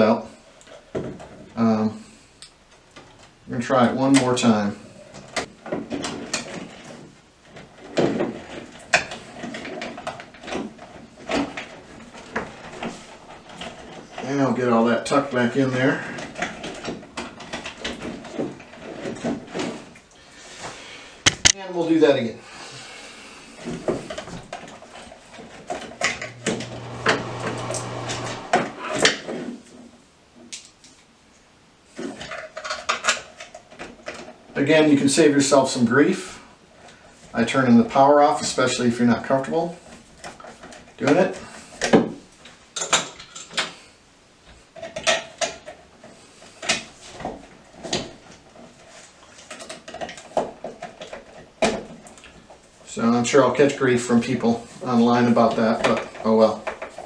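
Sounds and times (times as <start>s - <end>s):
low steady hum: 23.3s - 29.1s.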